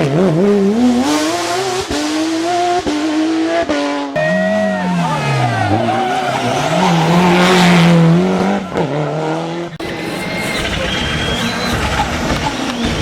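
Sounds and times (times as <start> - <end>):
rally car engine at full throttle: 0.0 - 13.0
tyre noise: 4.2 - 13.0.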